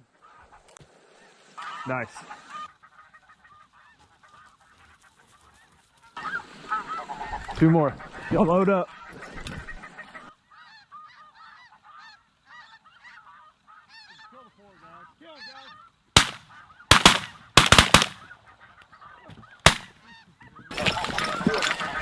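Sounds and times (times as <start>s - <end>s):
geese honking: 0.0s - 0.6s, 1.2s - 22.0s
shotgun shots: 16.2s - 18.3s, 19.7s - 19.9s.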